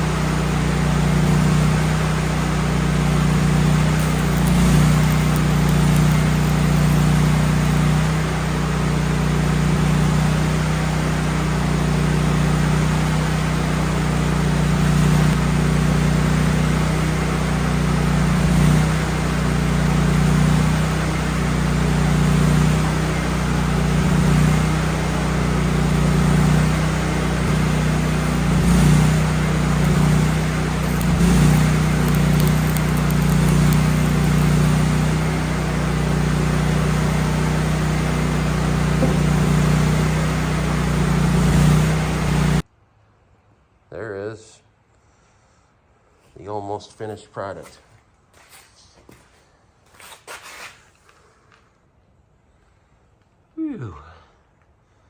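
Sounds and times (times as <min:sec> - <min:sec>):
welder engine running: 0:00.0 - 0:42.6
steady hiss: 0:03.9 - 0:07.9, 0:28.1 - 0:34.8.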